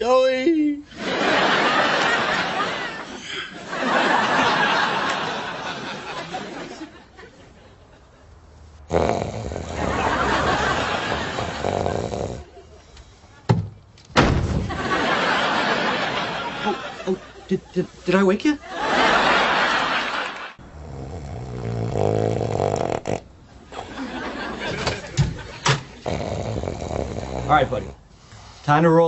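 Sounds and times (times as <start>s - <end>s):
audience laughing: 0.9s - 8.3s, 9.8s - 13.5s, 14.6s - 20.6s, 23.6s - 26.1s
sharp knock: 13.5s - 14.8s.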